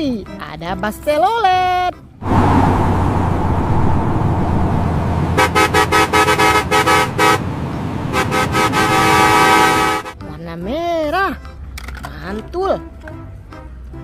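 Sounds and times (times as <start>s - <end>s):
steady low rumble: 2.2s - 8.3s
multi-tone bus horn toots: 5.3s - 10.2s.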